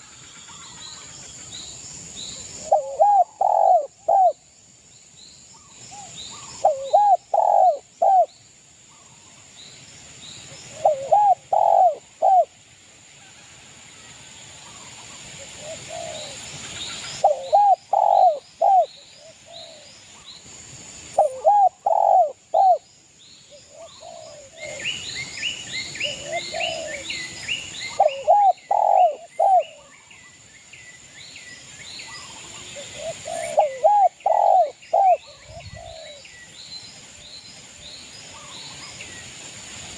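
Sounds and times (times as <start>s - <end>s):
dove cooing: 2.6s - 4.4s, 6.4s - 8.3s, 10.7s - 12.5s, 15.6s - 16.4s, 17.2s - 18.9s, 21.2s - 22.8s, 23.7s - 24.8s, 26.0s - 27.2s, 27.9s - 29.8s, 32.8s - 36.2s
small birds chirping: 14.6s - 20.5s, 21.2s - 39.4s.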